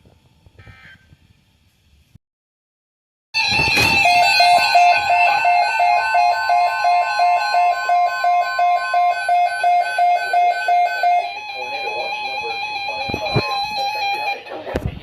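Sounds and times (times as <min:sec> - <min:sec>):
steady electronic tone: 0:03.4 - 0:14.6
rapid electronic beeping: 0:03.4 - 0:14.7.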